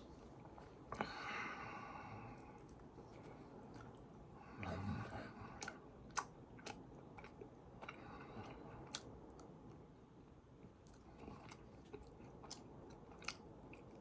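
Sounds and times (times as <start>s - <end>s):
person chewing food: 2.3s - 9.9s, 10.6s - 14.0s.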